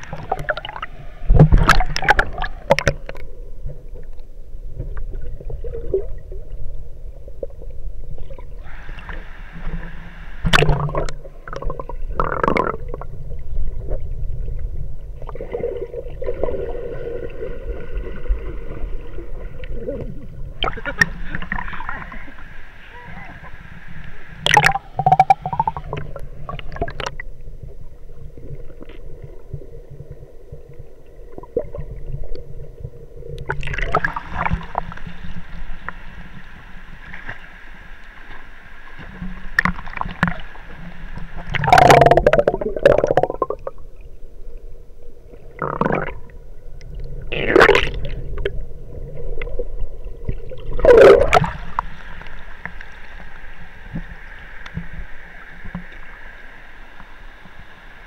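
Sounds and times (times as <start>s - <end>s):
water splashing: 0.0s - 4.1s, 7.3s - 27.4s, 33.3s - 44.1s, 47.2s - 57.6s
muffled water gurgling: 0.0s - 58.0s.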